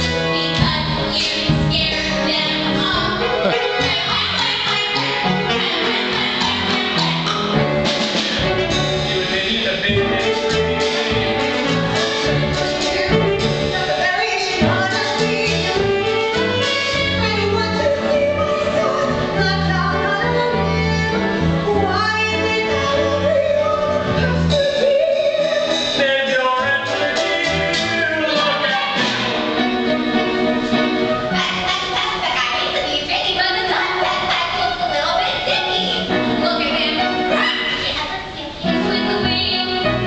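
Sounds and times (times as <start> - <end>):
woman singing: 0.0 - 7.4, 13.7 - 25.9, 38.6 - 39.9
instrumental accompaniment: 0.0 - 40.0.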